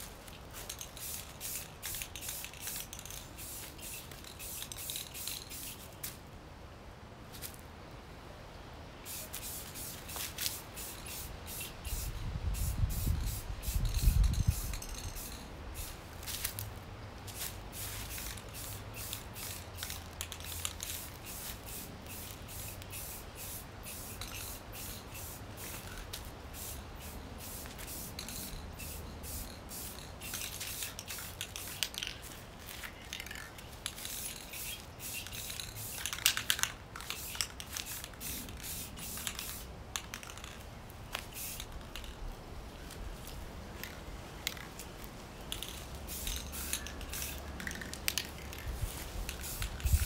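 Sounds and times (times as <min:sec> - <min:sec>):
aerosol can spraying bursts: 0:01.0 - 0:05.9, 0:09.1 - 0:16.6, 0:17.3 - 0:32.0, 0:33.8 - 0:39.7, 0:41.2 - 0:41.7, 0:45.7 - 0:47.4, 0:48.1 - 0:50.0.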